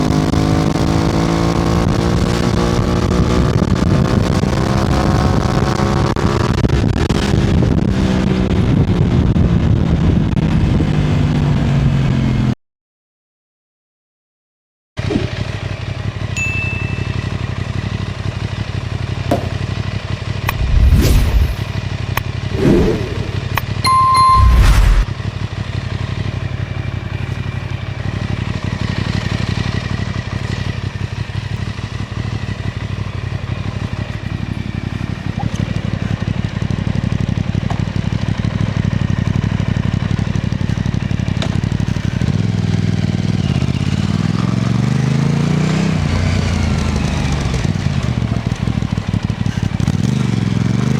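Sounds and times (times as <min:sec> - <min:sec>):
motorcycle engine running: 0:00.0 - 0:12.5, 0:15.0 - 0:24.1, 0:25.0 - 0:50.9
engine thumps: 0:19.2 - 0:21.6.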